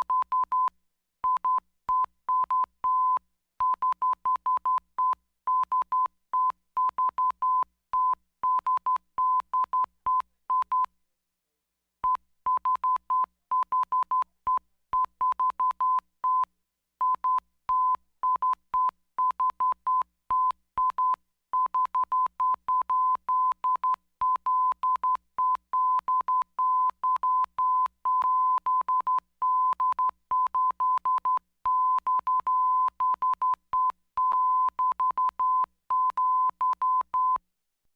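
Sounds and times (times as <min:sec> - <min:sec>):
morse code beeps: 0:17.0 - 0:37.4.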